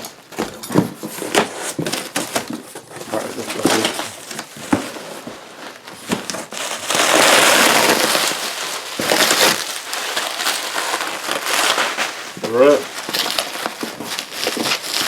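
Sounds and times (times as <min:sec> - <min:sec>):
packaging crinkling and rustling: 0:00.0 - 0:15.0.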